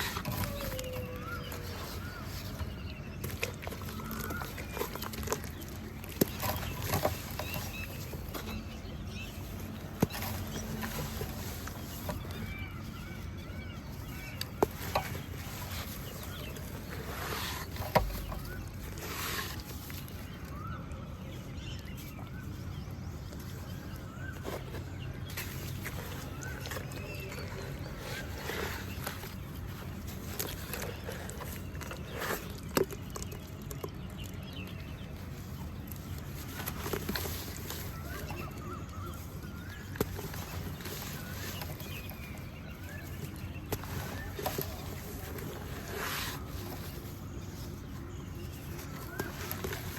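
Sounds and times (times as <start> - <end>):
water trickling over pebbles: 23.4 - 49.9.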